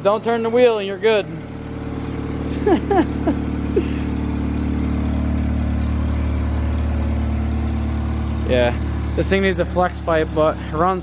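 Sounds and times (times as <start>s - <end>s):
car engine running: 0.0s - 11.0s.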